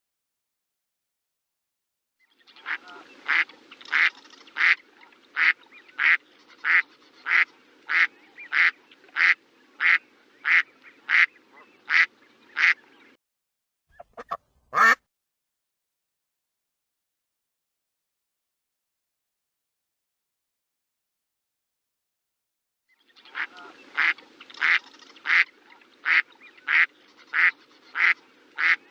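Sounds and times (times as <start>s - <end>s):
duck quacking: 2.6s - 4.8s, 5.4s - 12.8s, 14.0s - 15.0s, 23.3s - 28.9s.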